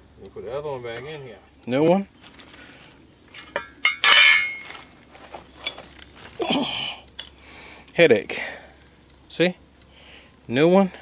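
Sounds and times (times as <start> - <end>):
metal clinks: 3.3 - 4.8, 7.2 - 7.4.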